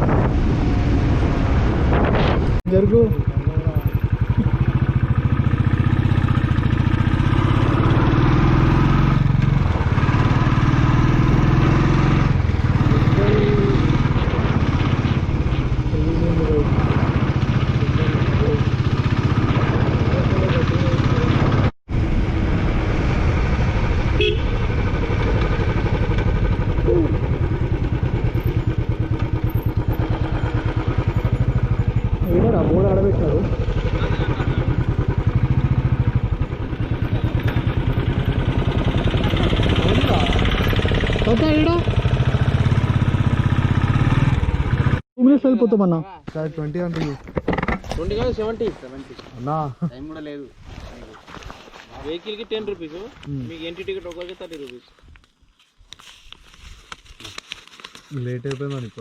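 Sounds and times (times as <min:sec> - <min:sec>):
motorcycle engine running: 0:02.7 - 0:45.0.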